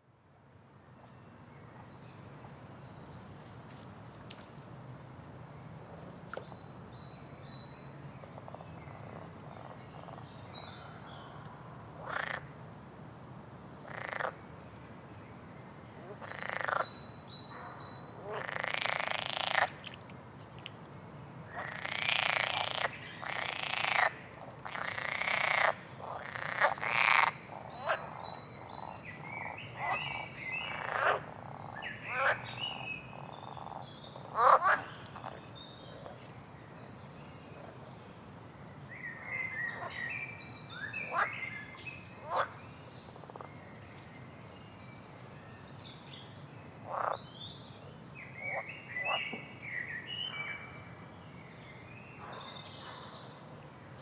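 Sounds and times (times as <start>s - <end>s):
low background noise: 0.0s - 54.0s
frogs croaking: 12.0s - 12.5s, 13.8s - 14.4s, 16.1s - 20.0s, 21.5s - 36.2s, 41.0s - 41.5s, 42.2s - 42.6s, 43.2s - 43.6s, 46.8s - 47.2s, 48.4s - 49.4s.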